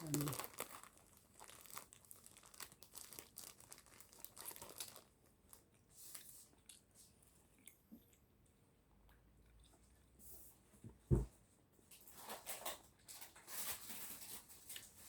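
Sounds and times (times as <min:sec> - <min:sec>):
material crinkling: 0:00.0 - 0:06.4.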